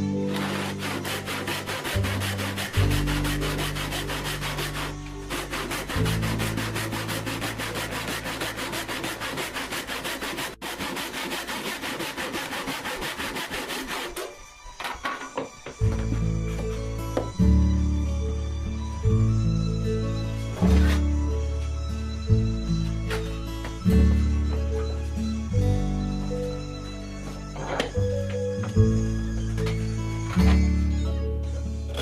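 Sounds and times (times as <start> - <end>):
hand saw cutting wood: 0.3 - 14.4, 20.6 - 21.0
soft guitar music: 15.8 - 32.0.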